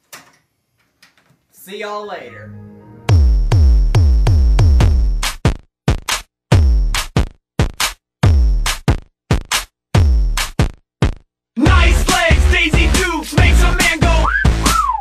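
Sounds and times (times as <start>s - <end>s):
electronic drum-machine beat: 3.1s - 15.0s.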